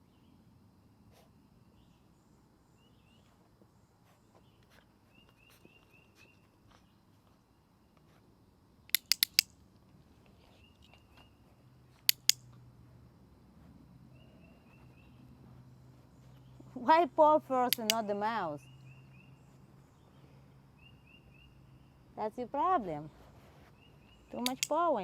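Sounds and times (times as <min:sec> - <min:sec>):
dog-training clicker clicking: 0:08.9 - 0:09.5, 0:12.1 - 0:12.4, 0:17.7 - 0:18.0, 0:24.4 - 0:24.9.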